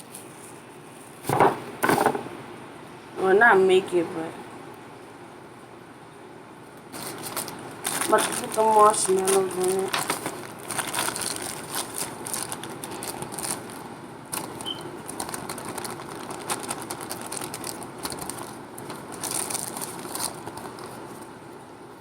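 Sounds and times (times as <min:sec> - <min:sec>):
plastic bag crinkling: 0:00.0 - 0:02.3, 0:06.9 - 0:21.6
marshmallows dropping into cup: 0:01.2 - 0:02.3.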